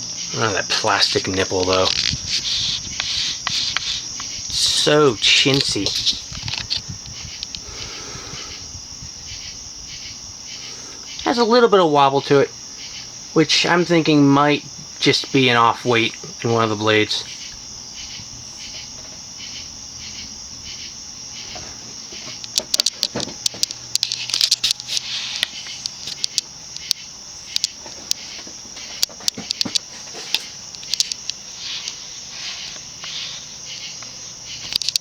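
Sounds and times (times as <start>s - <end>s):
ceiling fan motor humming: 0.0s - 35.0s
high-pitched pulsing chirping: 0.0s - 35.0s
sharp clicks: 1.1s - 7.7s, 22.3s - 28.3s, 28.9s - 32.0s, 33.9s - 35.0s.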